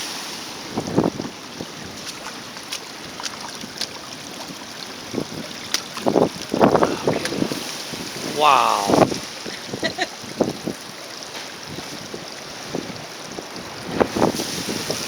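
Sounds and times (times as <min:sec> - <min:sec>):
sea surf hissing over rocks: 0:00.0 - 0:03.1, 0:06.1 - 0:15.0
water splashing ticks: 0:01.7 - 0:07.7.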